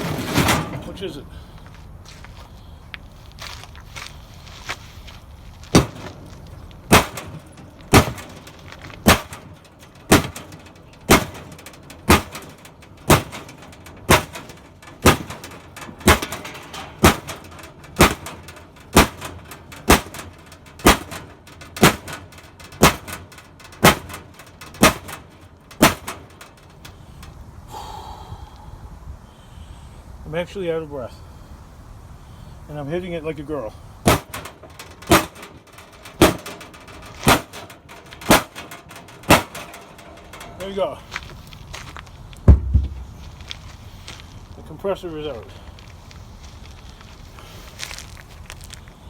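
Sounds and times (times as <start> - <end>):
hammer striking metal: 9.0 - 26.4, 34.1 - 35.6, 36.2 - 40.7.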